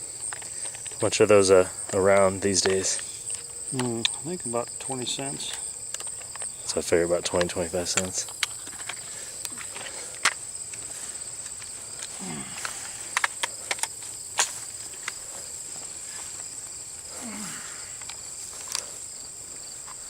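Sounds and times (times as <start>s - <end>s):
insect chorus: 0.0s - 20.0s
sharp clicks and knocks: 5.4s - 10.8s, 11.4s - 15.2s
brief low vocal sounds: 12.1s - 13.0s.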